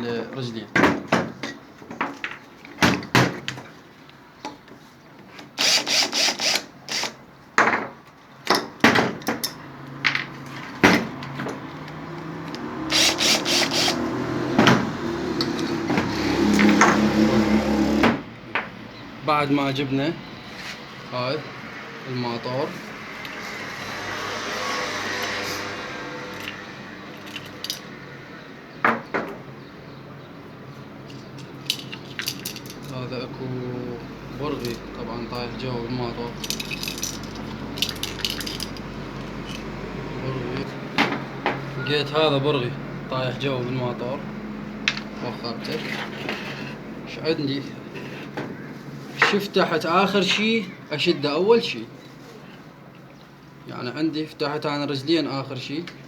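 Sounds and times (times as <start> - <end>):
ratchet clicks: 5.6 - 7.2, 12.9 - 14.0.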